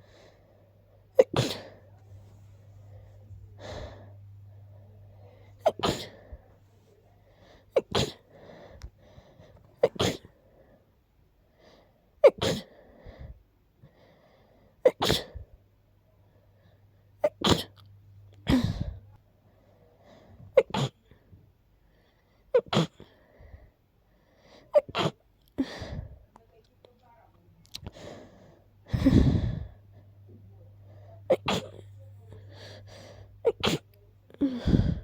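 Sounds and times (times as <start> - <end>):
person sneezing: 1.1 - 1.8, 5.6 - 6.4, 7.7 - 8.2, 9.8 - 10.3, 12.2 - 12.7, 14.8 - 15.4, 17.2 - 17.8, 18.4 - 19.0, 20.6 - 21.0, 24.8 - 25.2, 31.3 - 35.0.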